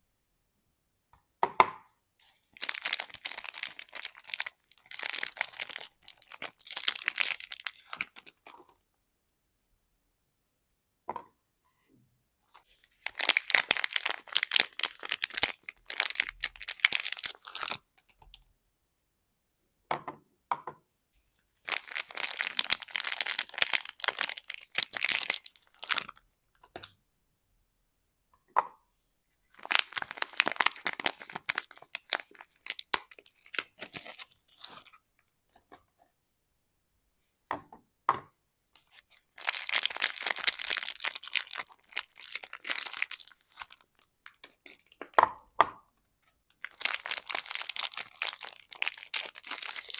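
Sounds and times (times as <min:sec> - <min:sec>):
wrappers being torn and crinkled: 0:02.2 - 0:08.5, 0:12.9 - 0:17.8, 0:21.6 - 0:26.2, 0:29.6 - 0:35.0, 0:38.8 - 0:45.0, 0:46.6 - 0:49.9.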